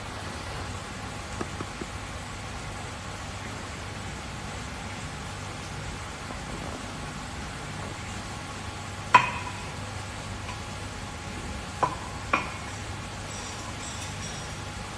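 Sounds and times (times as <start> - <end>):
sharp metallic clinks: 13.3 - 14.8.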